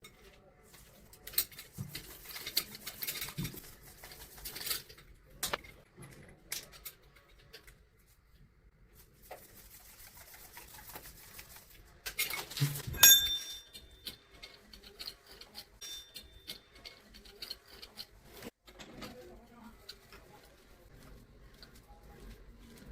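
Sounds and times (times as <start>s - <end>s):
metal tools clicking: 12.1s - 18.1s
sharp metallic clink: 12.8s - 14.0s, 15.8s - 16.5s.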